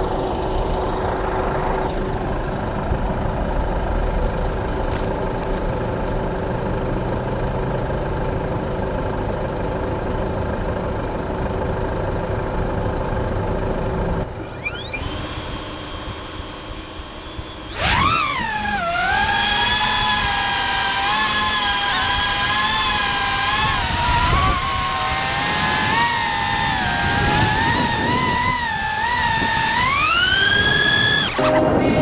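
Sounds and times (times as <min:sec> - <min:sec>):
drone propellers whining: 0:14.3 - 0:32.0.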